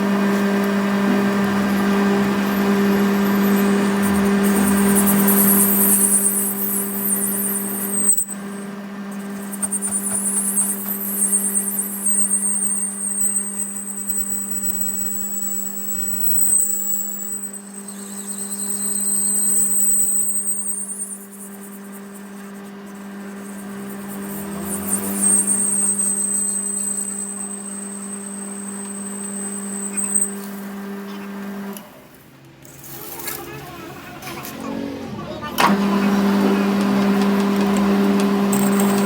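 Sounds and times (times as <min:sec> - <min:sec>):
tool on metal whine: 0:00.0 - 0:31.9, 0:35.6 - 0:39.0
machine motor hum: 0:00.0 - 0:39.0.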